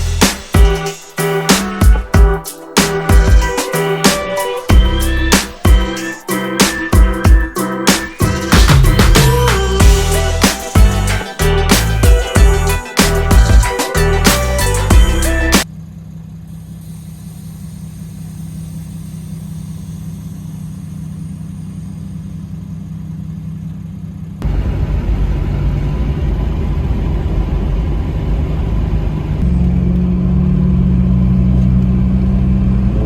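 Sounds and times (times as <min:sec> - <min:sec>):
car engine and road rumble: 0:07.9 - 0:33.0
steady low hum: 0:15.7 - 0:29.5.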